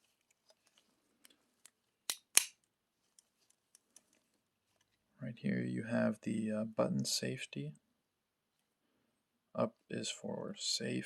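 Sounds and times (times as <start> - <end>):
switchblade metal clicks: 2.1 - 2.5.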